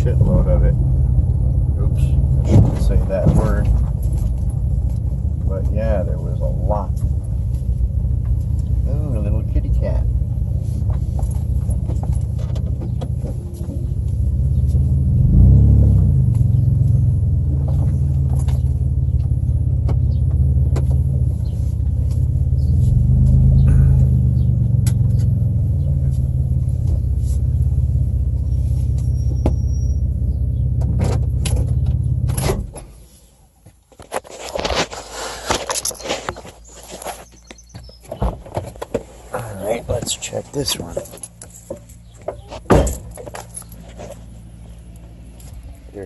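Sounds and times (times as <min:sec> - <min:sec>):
car engine and road rumble: 0:00.0 - 0:46.0.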